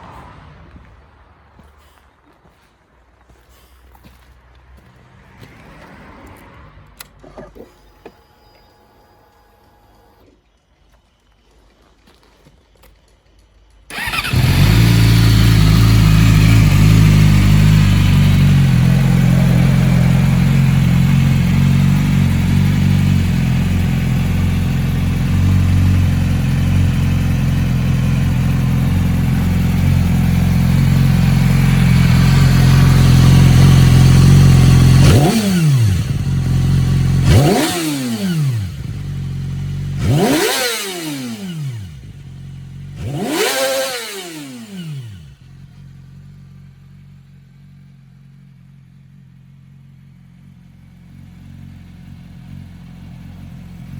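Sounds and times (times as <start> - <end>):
motorcycle engine idling: 13.2 - 53.9
engine revving in throttle blips: 13.9 - 46.0.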